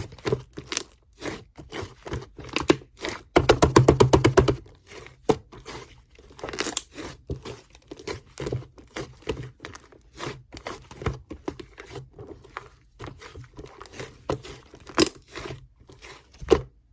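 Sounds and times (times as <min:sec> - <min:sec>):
slime crackling and popping: 0:06.4 - 0:07.0.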